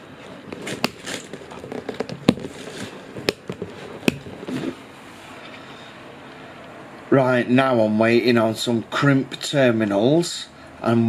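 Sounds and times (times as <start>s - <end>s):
soft rustling: 0.1s - 5.7s.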